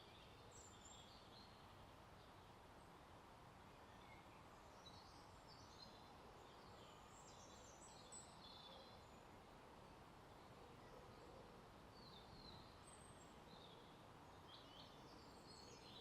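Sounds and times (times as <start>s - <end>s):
steady outdoor hiss: 0.0s - 16.0s.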